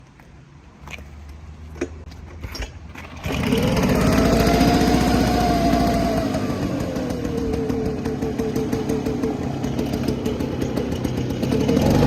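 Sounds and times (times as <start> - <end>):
engine blower rushing and whining: 3.0 - 12.0.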